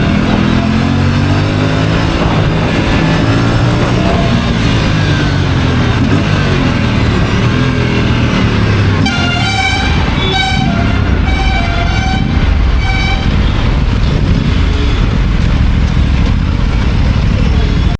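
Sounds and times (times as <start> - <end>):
motorcycle engine running: 0.0 - 17.9
vehicle horn honking: 9.0 - 13.6.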